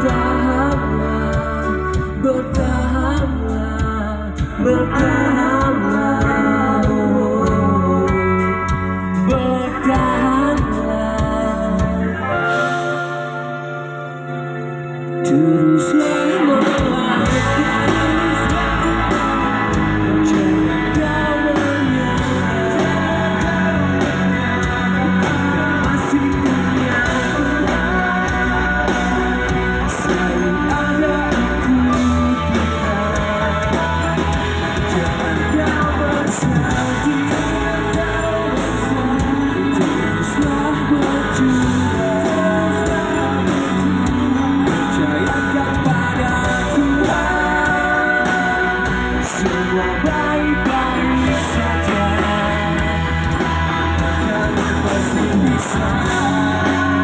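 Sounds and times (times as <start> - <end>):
electric guitar: 0.0 - 57.0
person singing: 0.0 - 57.0
rock band playing live: 0.0 - 57.0.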